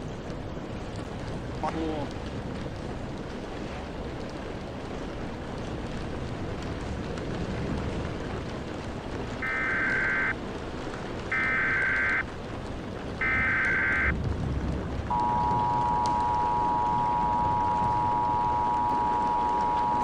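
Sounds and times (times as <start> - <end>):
steady rain: 0.0 - 20.0
screeching digital data bursts: 9.4 - 10.3, 11.3 - 12.2, 13.2 - 14.1
two-tone alert signal: 9.4 - 10.3, 11.3 - 12.2, 13.2 - 14.1, 15.1 - 20.0.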